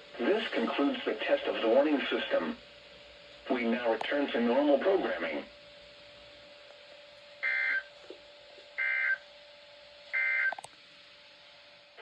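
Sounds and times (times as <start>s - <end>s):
faint steady hum: 0.0s - 12.0s
data tone bursts: 7.4s - 7.9s, 8.8s - 9.2s, 10.2s - 10.6s.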